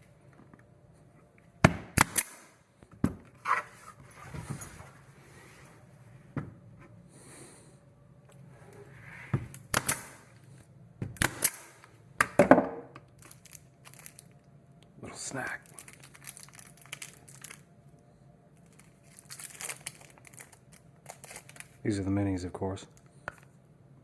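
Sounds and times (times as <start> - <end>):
pin nailer firing into wood: 1.6 - 2.6, 9.7 - 10.2, 11.2 - 12.7.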